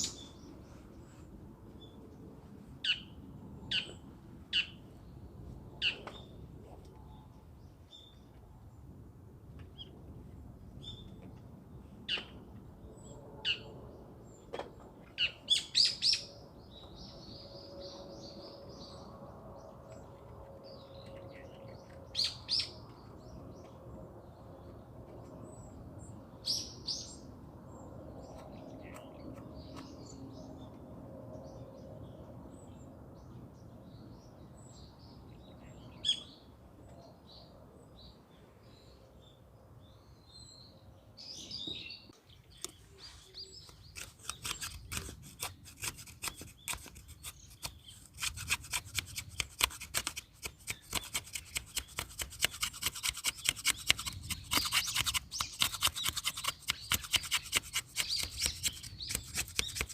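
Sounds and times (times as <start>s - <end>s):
small birds chirping: 37.9s - 59.9s.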